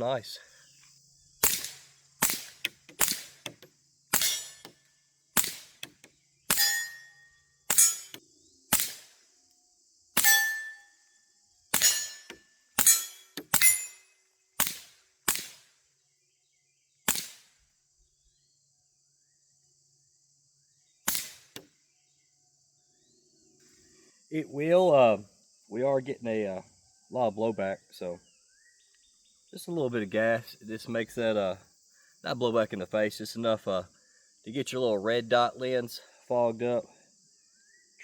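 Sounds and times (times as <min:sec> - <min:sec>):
suppressed pistol shots: 0:01.4 - 0:04.7, 0:05.4 - 0:07.1, 0:07.7 - 0:09.2, 0:10.2 - 0:10.8, 0:11.7 - 0:14.0, 0:14.6 - 0:15.7, 0:17.1 - 0:17.5, 0:21.1 - 0:21.7
steel targets ringing: 0:04.2 - 0:04.7, 0:06.5 - 0:08.2, 0:10.2 - 0:11.0, 0:11.8 - 0:14.1.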